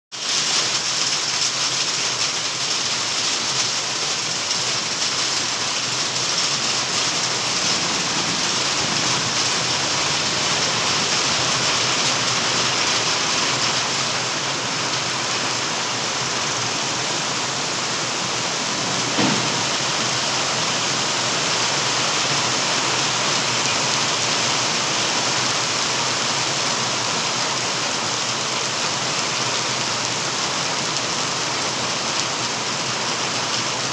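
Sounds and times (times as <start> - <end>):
hail and heavy rain falling: 0.2 - 33.9
short knock: 18.9 - 20.0.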